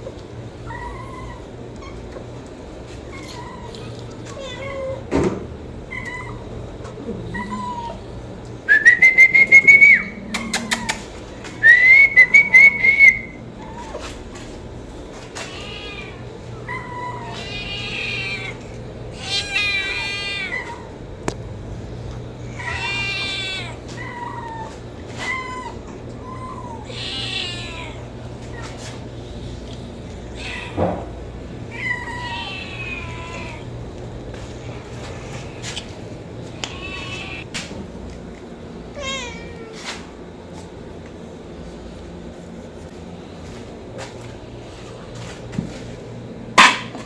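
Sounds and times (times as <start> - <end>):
kitten meowing: 15.5 - 18.6, 22.6 - 28.6.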